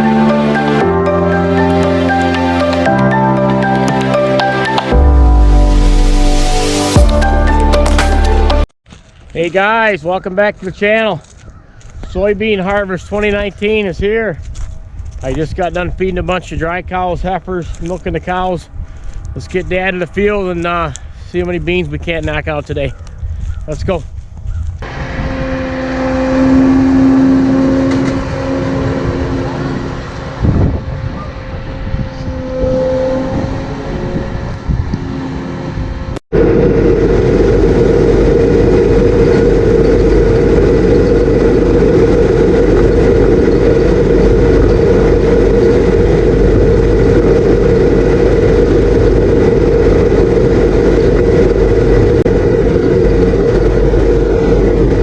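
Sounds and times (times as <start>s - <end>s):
vehicle engine running: 0.0s - 8.6s, 24.8s - 55.0s
heavy farm machinery drone: 0.0s - 8.7s, 24.8s - 55.0s.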